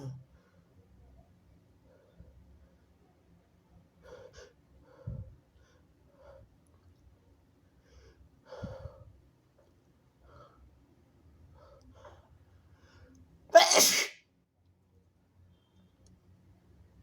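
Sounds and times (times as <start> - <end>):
faint breaths: 0.2 - 3.0, 3.9 - 13.4
person sneezing: 13.5 - 14.2.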